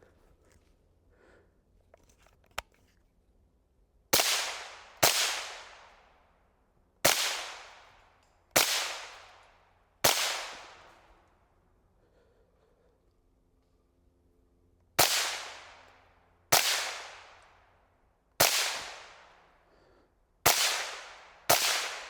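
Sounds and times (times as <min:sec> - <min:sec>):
suppressed rifle shots: 0:20.5 - 0:22.0.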